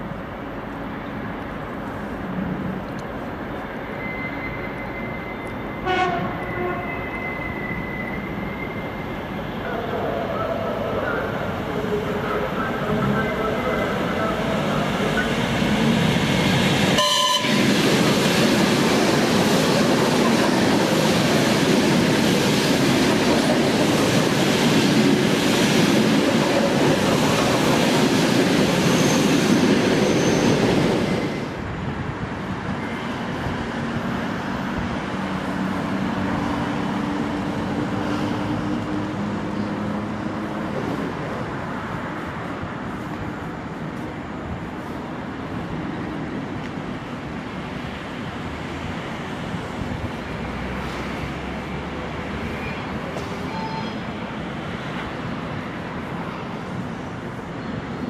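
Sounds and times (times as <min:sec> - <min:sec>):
train passing on rails: 0:00.0 - 0:58.0
train horn blast: 0:05.8 - 0:07.0, 0:17.0 - 0:17.6.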